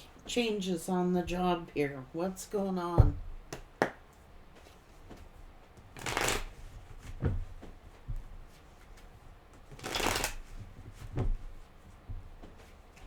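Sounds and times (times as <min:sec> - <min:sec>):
cards riffle shuffling: 0:06.0 - 0:06.6, 0:09.7 - 0:10.5.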